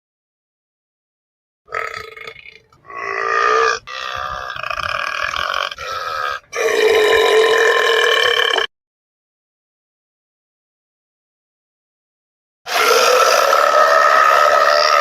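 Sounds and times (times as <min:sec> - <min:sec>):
long drawn-out burps: 0:01.7 - 0:08.7, 0:12.7 - 0:15.0.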